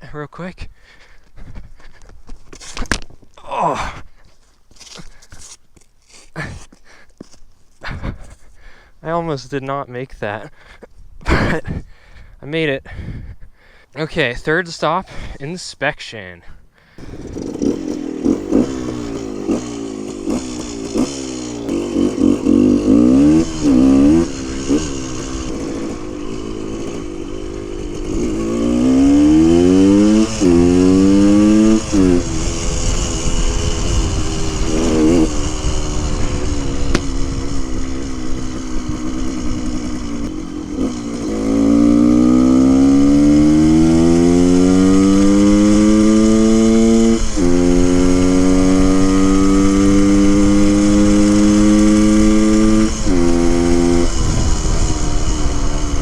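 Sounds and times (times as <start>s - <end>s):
motorcycle engine revving: 17.0s - 56.0s.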